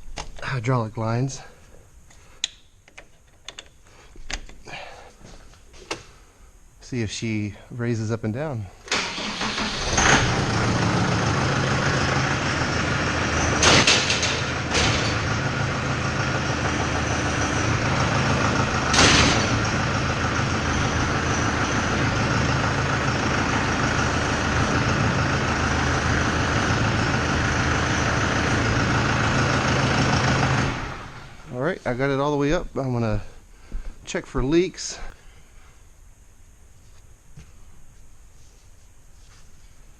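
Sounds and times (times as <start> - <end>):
tractor engine running: 8.9 - 33.2
hydraulic rushing noise: 17.6 - 20.5.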